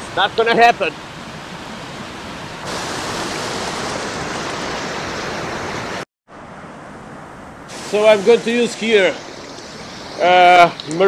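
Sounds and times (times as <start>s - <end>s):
river rushing over rocks: 2.7s - 6.0s.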